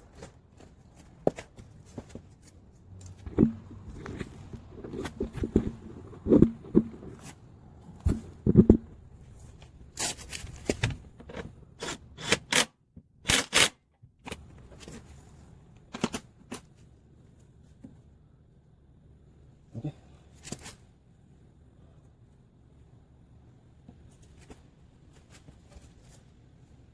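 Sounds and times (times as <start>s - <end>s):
hand tools and metal parts clicking: 10.0s - 15.0s, 15.8s - 16.7s
sharp rasping bursts: 11.8s - 13.8s.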